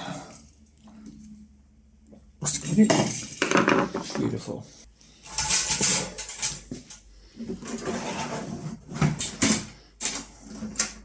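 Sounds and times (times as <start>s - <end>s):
parts knocking and clattering: 2.8s - 4.2s, 5.3s - 7.9s.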